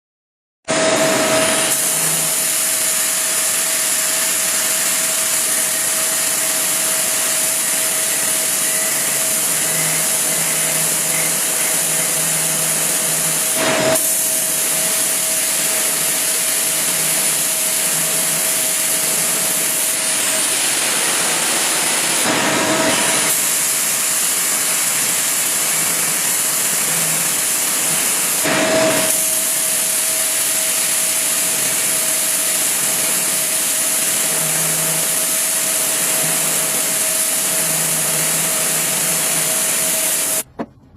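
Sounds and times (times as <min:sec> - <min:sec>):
metal printing machine hissing: 0:00.7 - 0:40.5
machine hum: 0:00.7 - 0:40.9.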